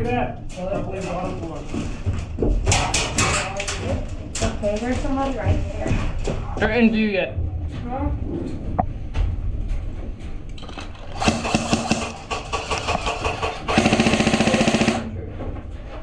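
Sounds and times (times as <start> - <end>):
airsoft rifle firing full auto: 11.1 - 15.1.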